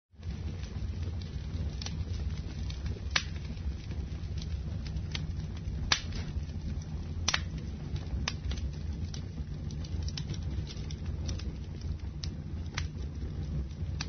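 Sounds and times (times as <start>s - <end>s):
fire popping: 0.1s - 14.0s
wood fire crackling: 0.1s - 14.0s.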